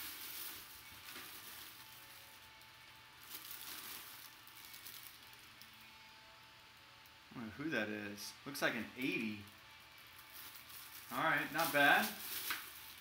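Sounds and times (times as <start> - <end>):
packaging rustling and crinkling: 0.0 - 5.9, 9.0 - 13.0.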